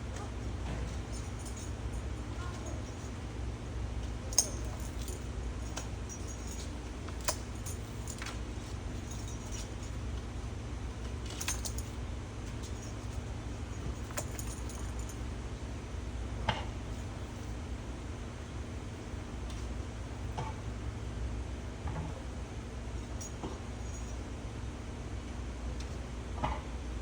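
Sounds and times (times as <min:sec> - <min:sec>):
short metallic clinks: 0:04.3 - 0:08.4, 0:11.3 - 0:12.0.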